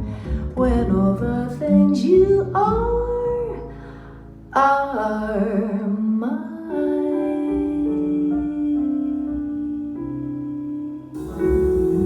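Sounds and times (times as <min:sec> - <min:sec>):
instrumental accompaniment: 0:11.2 - 0:12.0
keyboard playing slow chords: 0:11.2 - 0:12.0.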